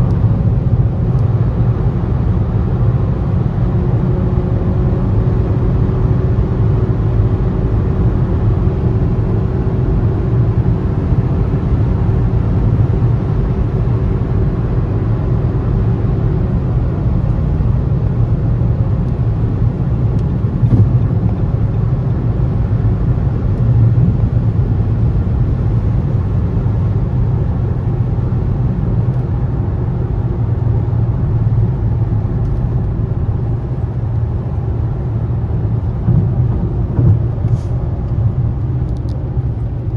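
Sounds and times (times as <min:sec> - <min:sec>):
road rumble: 0:00.0 - 0:39.9
car engine running: 0:17.4 - 0:25.6.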